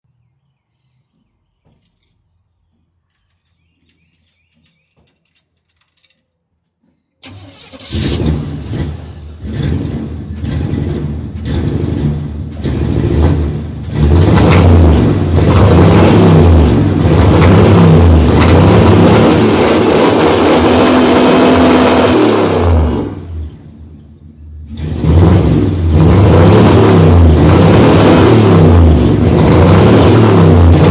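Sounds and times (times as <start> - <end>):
pickup truck engine revving: 7.2 - 23.8, 24.6 - 30.9.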